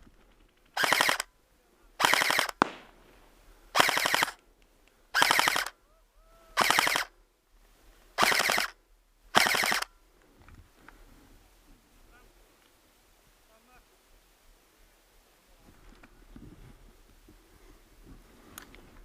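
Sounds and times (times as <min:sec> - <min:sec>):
airsoft gun bursts: 0:00.8 - 0:01.3, 0:02.0 - 0:03.1, 0:03.7 - 0:04.4, 0:05.1 - 0:05.8, 0:06.6 - 0:07.1, 0:08.2 - 0:09.9.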